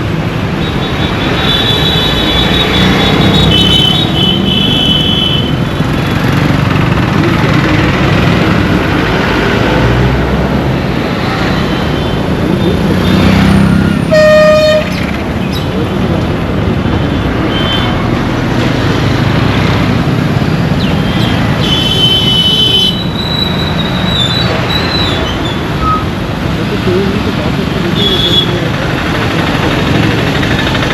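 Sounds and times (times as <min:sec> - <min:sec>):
traffic rumble: 0:00.0 - 0:30.9
higher-pitched horn: 0:14.1 - 0:15.0
vehicle horn honking: 0:14.1 - 0:15.0, 0:21.6 - 0:23.0.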